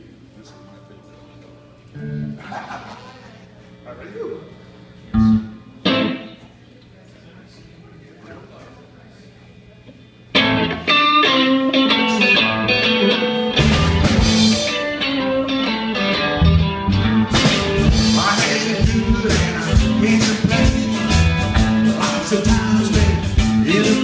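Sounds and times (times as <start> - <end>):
electric guitar: 0.5 - 3.1, 5.1 - 6.6, 10.3 - 24.0
drums: 10.3 - 24.0.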